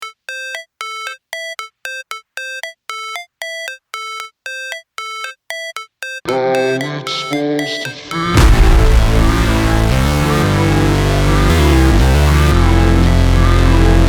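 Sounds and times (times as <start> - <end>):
electronic synth music: 0.0 - 14.0
bass: 8.4 - 14.0.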